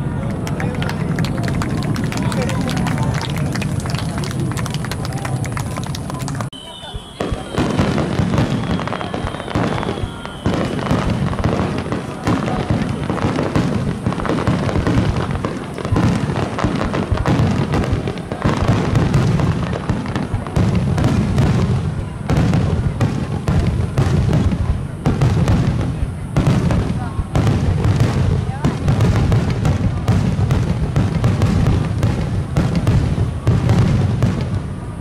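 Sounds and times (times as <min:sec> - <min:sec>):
fireworks booming and crackling: 0:00.0 - 0:35.0
faint falling whistle: 0:06.4 - 0:11.5.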